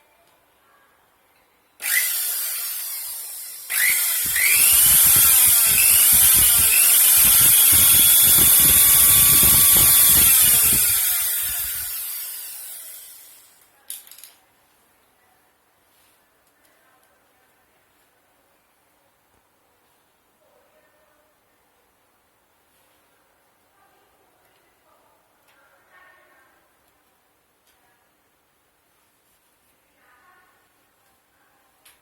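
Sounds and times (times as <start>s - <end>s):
electric blender motor whining: 1.8s - 12.9s.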